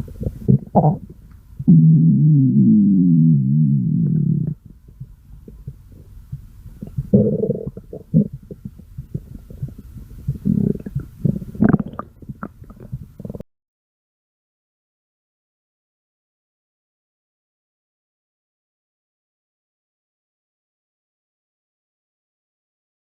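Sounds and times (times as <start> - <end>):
stomach growling and gurgling: 0.0 - 13.4.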